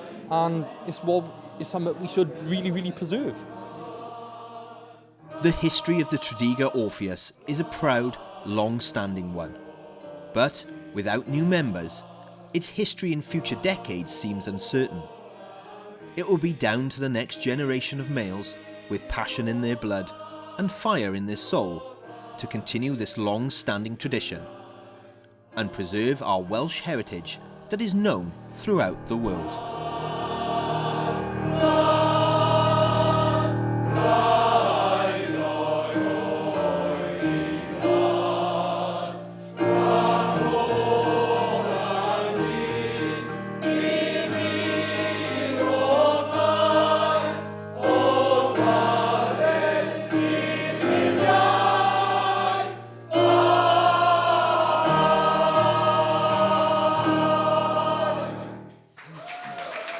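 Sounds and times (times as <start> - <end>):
male choir singing in harmony: 0.0 - 58.8.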